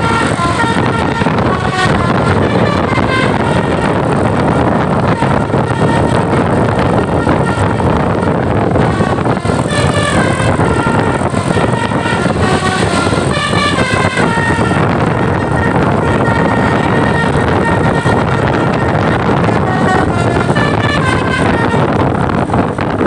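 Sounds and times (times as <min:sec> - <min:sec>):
bus horn playing melody: 0:00.0 - 0:23.0
steady vehicle noise: 0:00.0 - 0:23.0.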